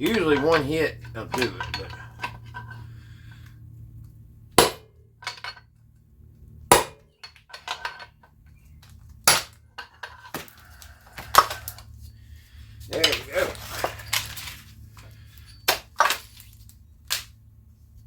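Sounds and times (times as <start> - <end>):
sledgehammer striking metal: 4.5 - 5.6, 6.7 - 8.0, 9.2 - 10.0.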